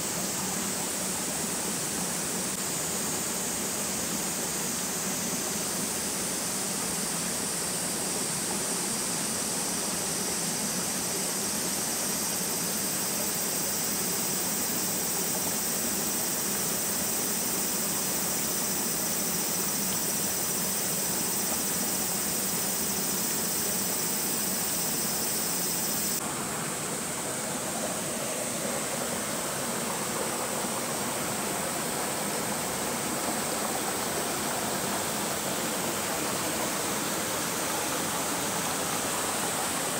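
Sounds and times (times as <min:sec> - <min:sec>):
rushing water: 0:20.3 - 0:39.9.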